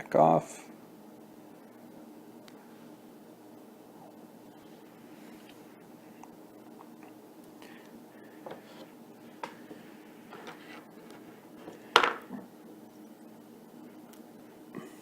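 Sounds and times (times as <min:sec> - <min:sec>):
tools tapping on hard surface: 0:12.0 - 0:12.4.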